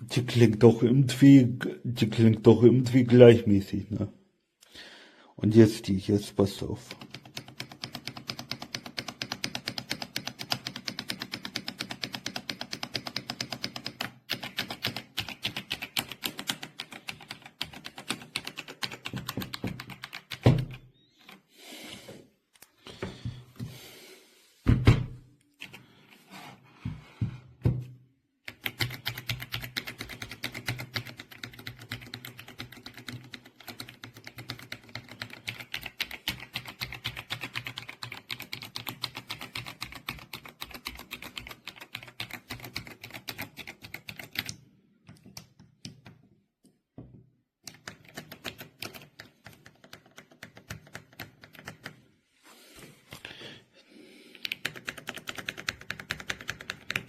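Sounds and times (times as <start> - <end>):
typing on mechanical keyboard: 6.8 - 21.4, 25.6 - 25.9, 28.4 - 46.2, 47.6 - 52.0, 54.4 - 57.0.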